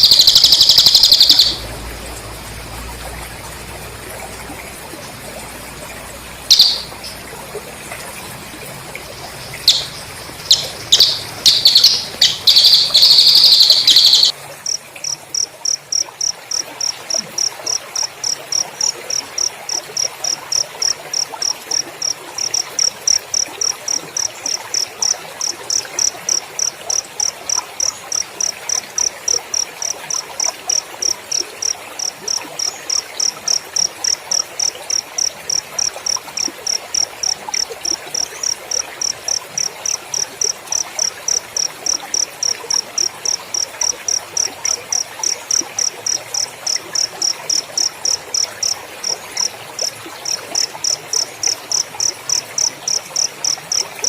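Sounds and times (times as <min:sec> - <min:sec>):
cricket chirping: 0:00.0 - 0:07.4, 0:08.5 - 0:54.0.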